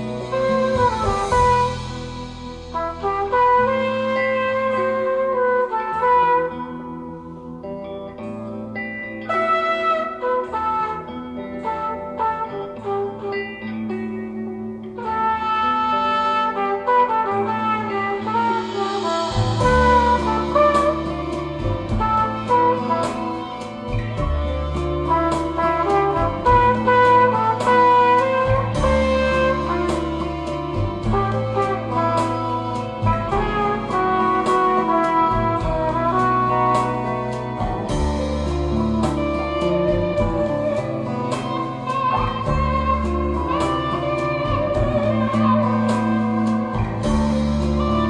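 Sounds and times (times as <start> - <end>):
deep bass line: 0.0 - 7.6, 17.2 - 48.0
melodic lead: 0.0 - 48.0.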